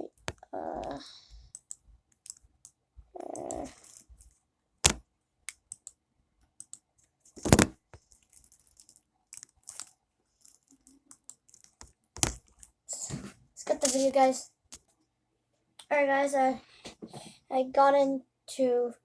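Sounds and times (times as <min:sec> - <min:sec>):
keyboard key clicks: 0:12.2 - 0:12.4.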